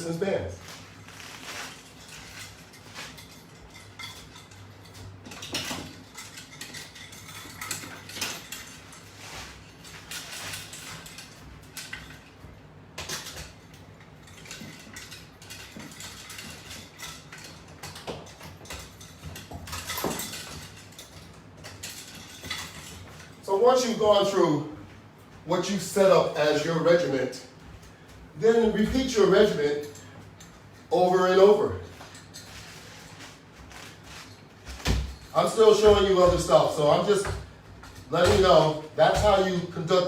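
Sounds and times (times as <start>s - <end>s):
metal hardware clinking and rattling: 0.6s - 24.4s.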